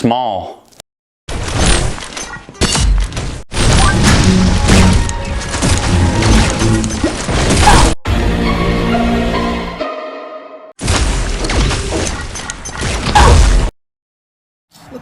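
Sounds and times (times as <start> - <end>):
crashing smashing impacts: 2.7 - 8.0, 10.8 - 13.7.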